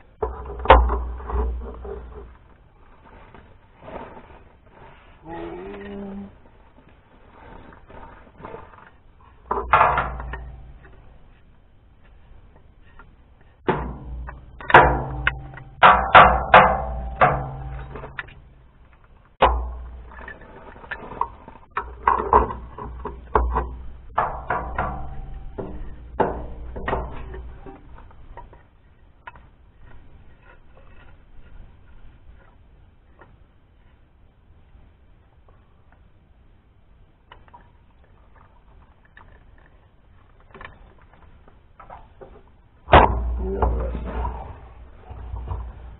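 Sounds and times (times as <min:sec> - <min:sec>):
metal clanking and knocking: 0:09.4 - 0:11.2, 0:13.6 - 0:18.6, 0:19.4 - 0:28.0.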